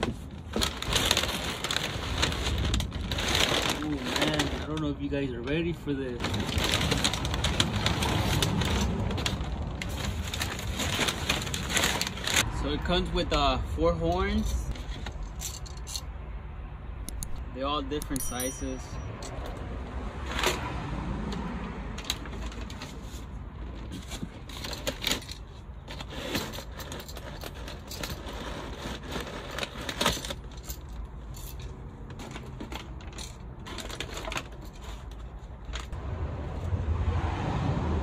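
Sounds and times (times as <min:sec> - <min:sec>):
horn parts clinking when handled: 0:18.0 - 0:19.6.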